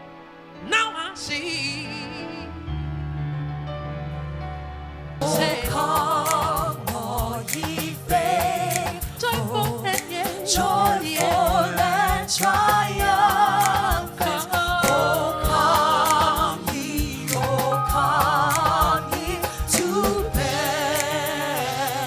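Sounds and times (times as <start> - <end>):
band accompaniment: 5.2 - 22.0
gospel singing with vibrato: 5.2 - 22.0.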